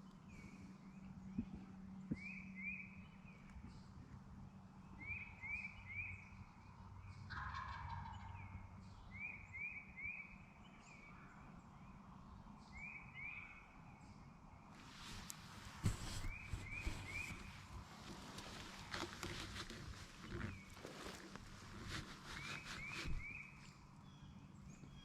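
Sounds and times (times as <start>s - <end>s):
songbird chirping: 0.0s - 25.0s
distant turkey gobbling: 7.3s - 8.5s.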